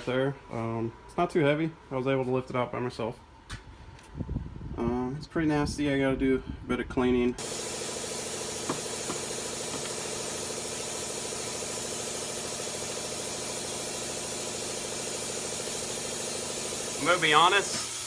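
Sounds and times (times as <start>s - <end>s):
small motor humming: 7.4s - 18.0s.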